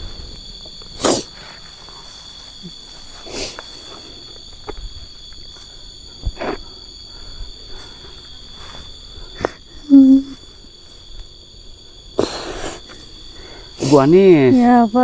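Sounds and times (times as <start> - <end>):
woman sobbing: 9.9 - 10.4.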